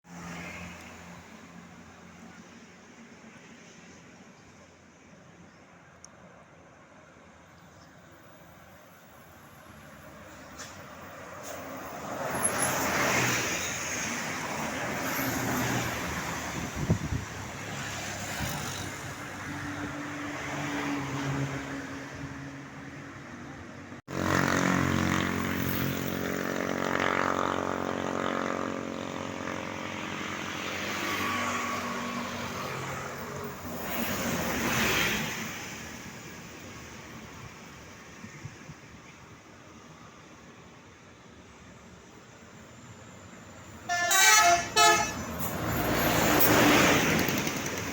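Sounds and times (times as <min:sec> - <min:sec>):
buses passing: 0:00.1 - 0:47.9
multi-tone musical horn: 0:43.9 - 0:45.3.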